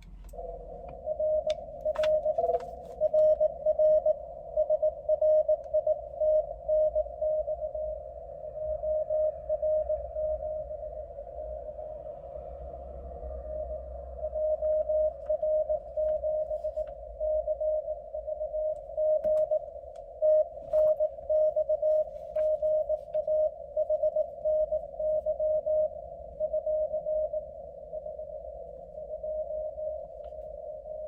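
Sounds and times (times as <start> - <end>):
morse code tone: 0.0 - 8.0, 13.5 - 28.3.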